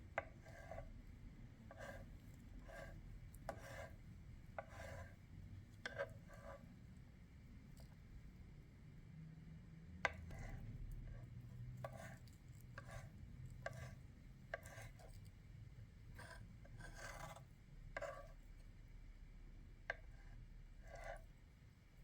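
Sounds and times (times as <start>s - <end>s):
utensil scraping food: 1.7s - 4.0s, 4.6s - 5.2s, 16.2s - 18.4s.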